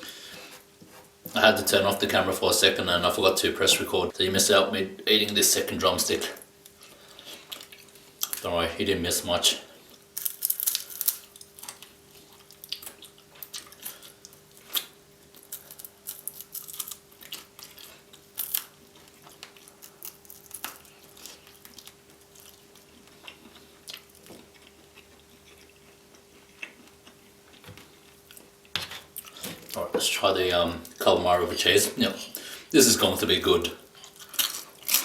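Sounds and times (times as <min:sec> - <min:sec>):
chewing with wet mouth clicks: 0:06.7 - 0:08.4, 0:20.6 - 0:28.5.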